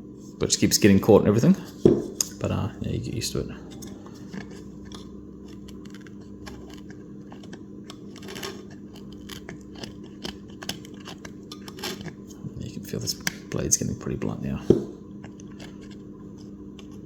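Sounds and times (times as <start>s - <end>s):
blade scraping plastic: 3.6s - 12.4s, 14.6s - 17.0s.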